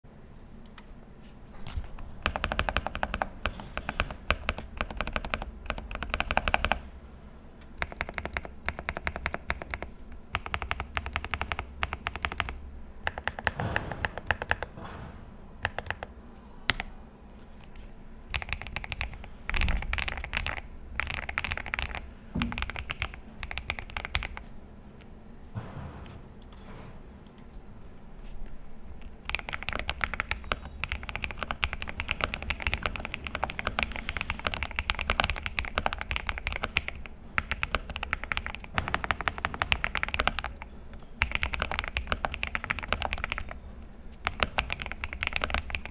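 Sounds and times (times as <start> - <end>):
mechanical keyboard typing: 1.9 - 6.9, 7.8 - 14.8, 15.6 - 16.1, 18.3 - 24.5, 29.0 - 43.6, 44.2 - 45.9.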